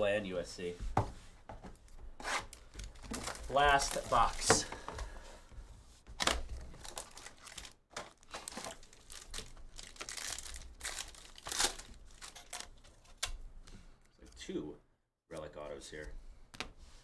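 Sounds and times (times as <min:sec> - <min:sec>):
plastic wrapping crinkling and tearing: 0:02.2 - 0:04.8, 0:06.2 - 0:13.4.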